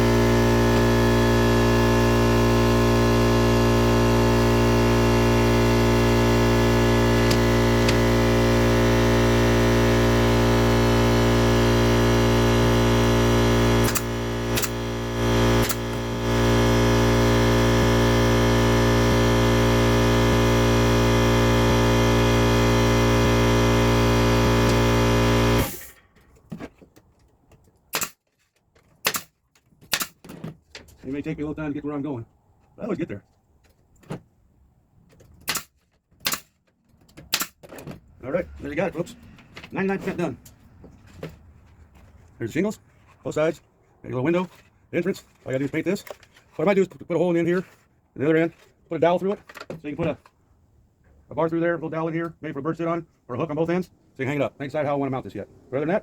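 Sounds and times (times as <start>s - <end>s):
distorted electronic buzz: 0.0s - 25.9s.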